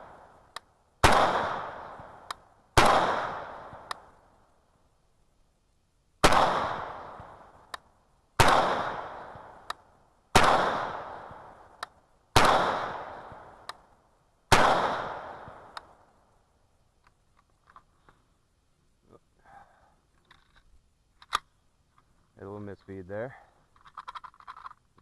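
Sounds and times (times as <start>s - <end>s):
light tick: 0.5s - 0.7s, 13.6s - 13.8s, 15.7s - 15.9s
rifle shots with echo: 1.0s - 4.2s, 6.2s - 7.7s, 8.4s - 11.8s, 12.4s - 13.7s, 14.5s - 16.1s.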